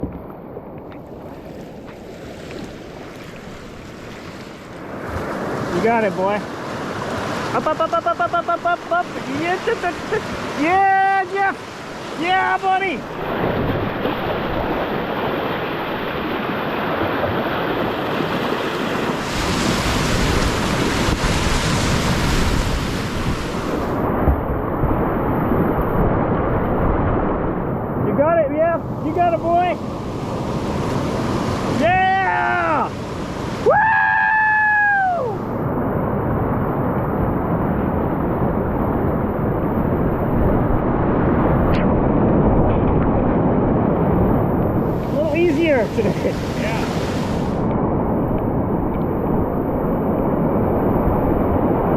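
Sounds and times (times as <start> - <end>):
whitewater rapids rushing: 5.3 - 24.2, 44.8 - 47.6
person whooping: 31.8 - 32.9, 33.6 - 35.4.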